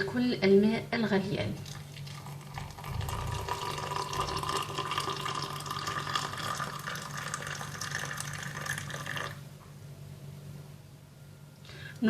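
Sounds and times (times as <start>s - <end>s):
water pouring into cup: 1.6s - 9.4s.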